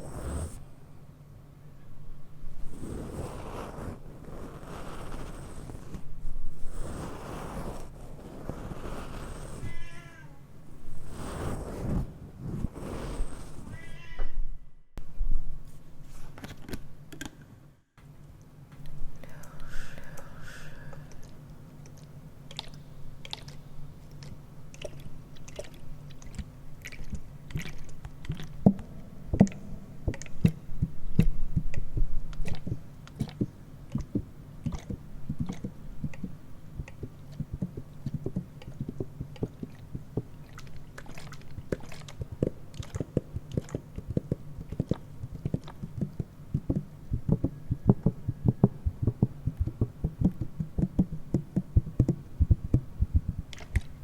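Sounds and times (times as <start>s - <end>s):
steady low hum: 0.0s - 54.0s
low rubbing sound: 2.6s - 10.0s, 10.8s - 13.9s.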